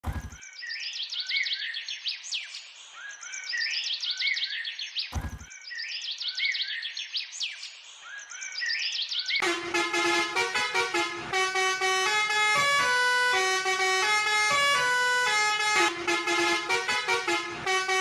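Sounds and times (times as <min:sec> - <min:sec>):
low thump: 0:05.2 - 0:05.5.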